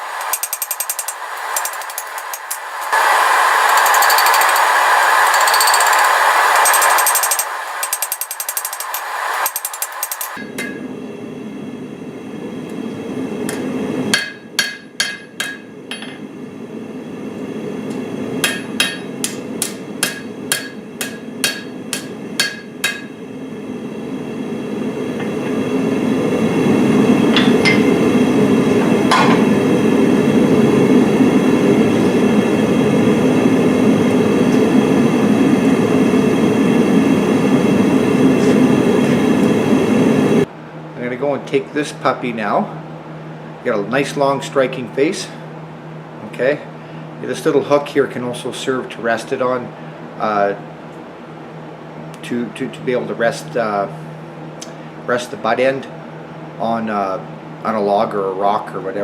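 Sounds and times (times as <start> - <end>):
steady rushing noise: 0.0 - 10.4
hammer striking steel on anvil: 0.2 - 3.0, 3.6 - 10.8, 13.5 - 16.2, 18.4 - 23.2, 27.3 - 28.0, 29.1 - 29.5.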